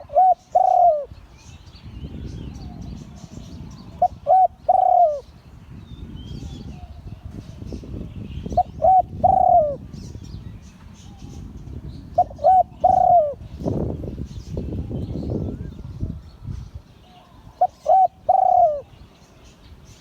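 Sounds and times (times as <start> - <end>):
dove cooing: 0.0 - 1.2, 2.6 - 5.3, 8.5 - 9.9, 12.1 - 13.5, 17.0 - 19.0.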